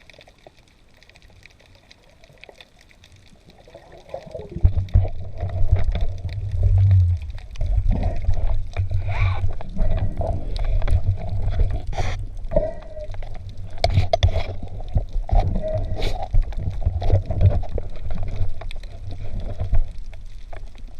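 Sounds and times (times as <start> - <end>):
water sloshing and gurgling: 0.0 - 20.9
steady low rumble: 4.6 - 20.0.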